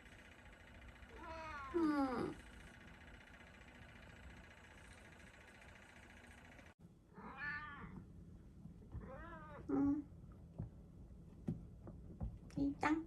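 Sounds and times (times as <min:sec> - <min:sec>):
cat meowing: 0:01.2 - 0:01.8, 0:07.2 - 0:08.0, 0:09.0 - 0:09.8.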